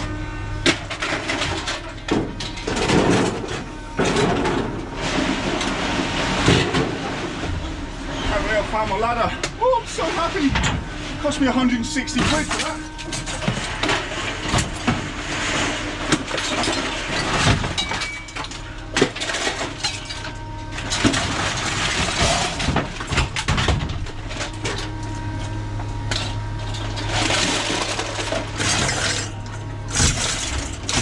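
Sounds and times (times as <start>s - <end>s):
engine humming: 0.0s - 31.0s
scrap metal clattering: 0.6s - 9.1s, 26.2s - 31.0s.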